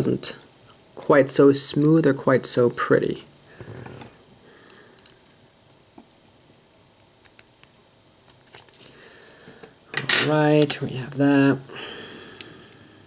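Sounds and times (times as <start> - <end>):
small metal parts clicking: 4.7 - 5.4.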